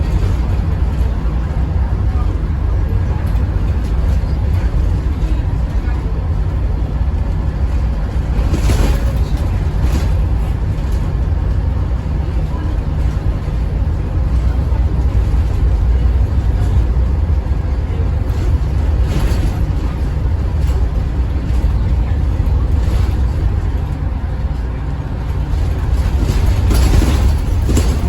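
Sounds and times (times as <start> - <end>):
bus engine rumble: 0.0 - 28.0.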